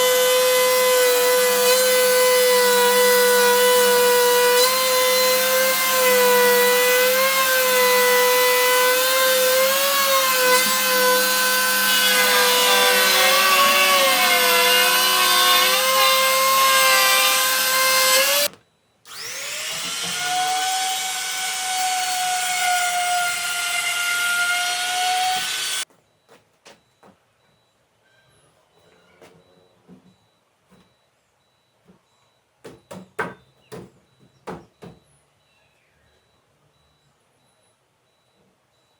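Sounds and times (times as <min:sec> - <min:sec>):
power tool cutting wood: 0:00.0 - 0:18.5, 0:19.1 - 0:25.8.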